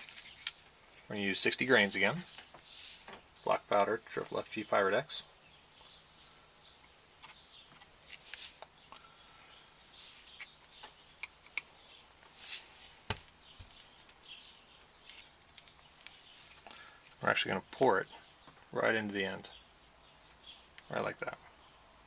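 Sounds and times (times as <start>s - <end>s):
short rustles: 2.2s - 3.3s, 7.2s - 8.6s, 12.2s - 13.1s
small handling clicks: 15.0s - 17.2s.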